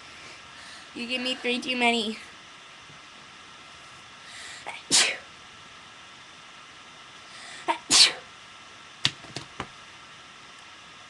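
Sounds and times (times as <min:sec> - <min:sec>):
person sneezing: 0:04.7 - 0:05.3, 0:07.6 - 0:08.3.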